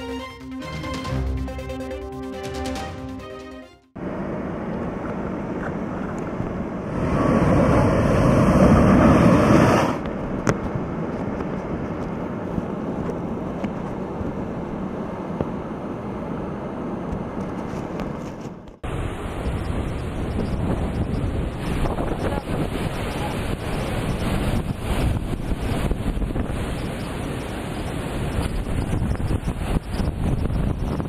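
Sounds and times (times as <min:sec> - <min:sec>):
rough sea: 0:04.0 - 0:17.0, 0:18.8 - 0:31.0
wind buffeting microphone: 0:04.8 - 0:15.6, 0:17.1 - 0:31.0.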